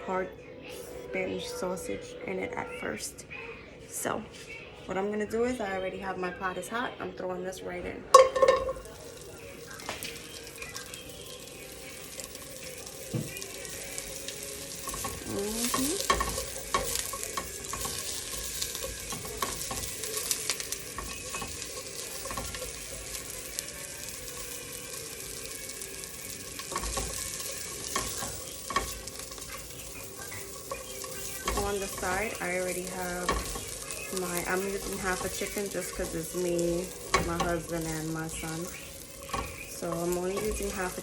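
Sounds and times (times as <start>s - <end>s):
sausage sizzling in a pot: 0.0s - 4.2s, 4.9s - 41.0s
utensil scraping a pot: 12.9s - 41.0s.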